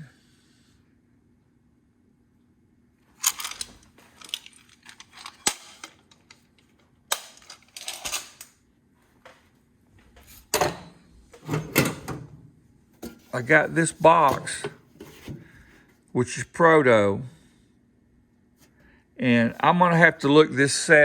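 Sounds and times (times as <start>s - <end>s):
toolboxes clattering: 3.2s - 6.5s, 7.1s - 8.5s, 10.4s - 12.3s, 13.0s - 15.5s.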